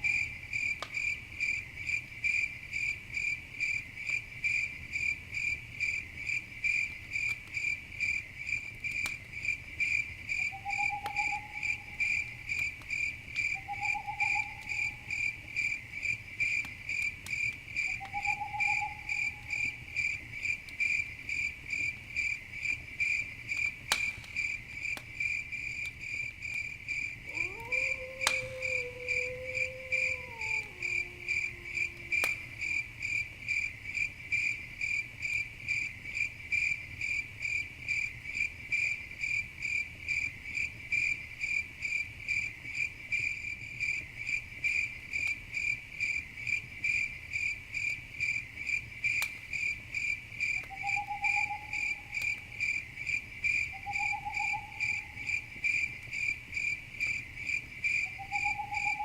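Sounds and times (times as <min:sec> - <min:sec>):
crickets chirping: 0:00.0 - 0:59.0
campfire popping: 0:00.2 - 0:13.6, 0:14.2 - 0:58.9.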